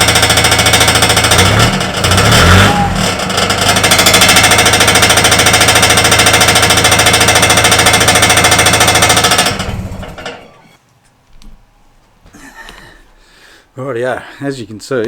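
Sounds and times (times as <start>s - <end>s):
exhaust pipe rattling: 0.0s - 10.6s
diesel engine idling: 0.0s - 10.7s.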